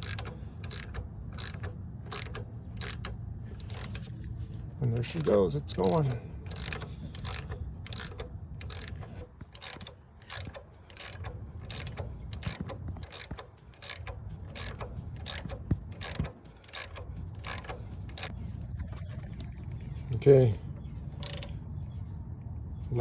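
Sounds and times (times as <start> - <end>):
hand ratchet clicking: 0.0 - 4.1, 5.0 - 18.3, 21.2 - 21.5.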